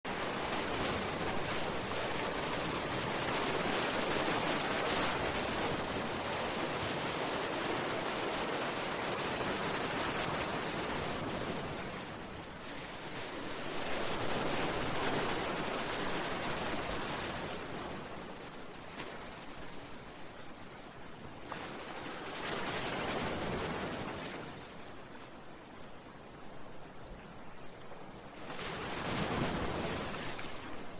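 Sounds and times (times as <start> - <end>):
sea waves washing against rocks: 0.1 - 18.2.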